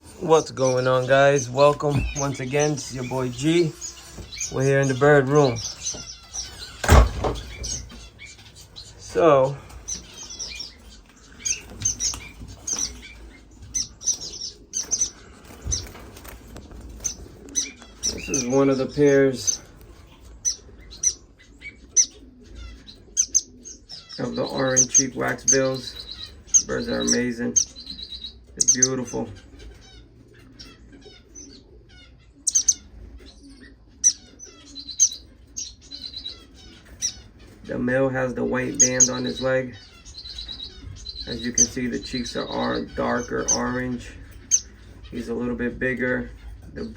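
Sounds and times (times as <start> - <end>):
wings fluttering: 0.0 - 28.5
small birds chirping: 0.0 - 46.9.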